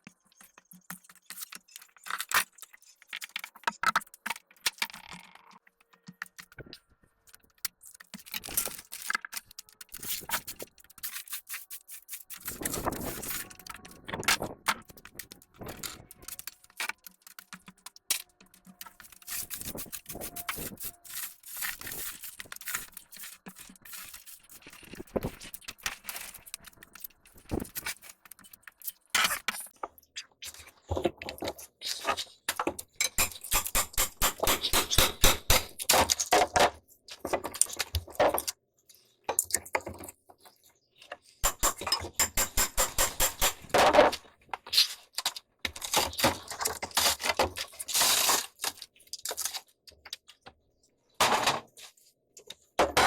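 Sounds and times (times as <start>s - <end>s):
rapid clicking and knocking tool: 33.0s - 36.0s, 41.4s - 44.2s.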